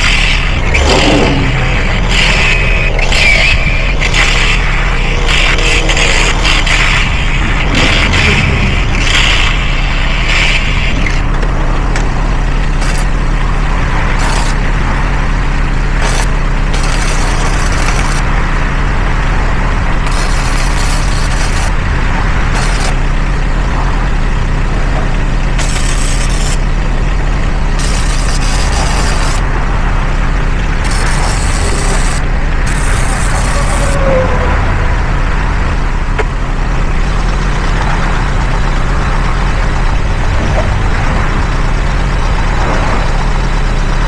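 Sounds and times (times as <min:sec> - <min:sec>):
welder hissing and crackling: 0:00.0 - 0:11.2, 0:12.7 - 0:13.2, 0:14.1 - 0:14.6, 0:16.0 - 0:18.2, 0:20.0 - 0:21.8, 0:22.6 - 0:23.0, 0:25.6 - 0:26.6, 0:27.8 - 0:29.4, 0:30.8 - 0:34.0
low engine-like hum: 0:00.0 - 0:44.0.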